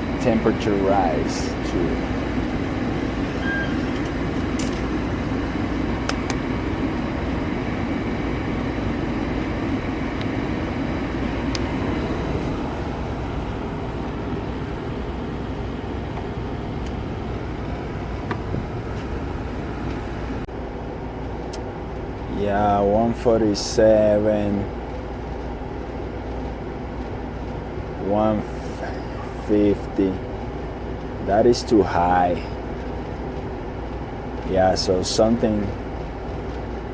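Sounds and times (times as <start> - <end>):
gas furnace running: 0.0 - 36.9.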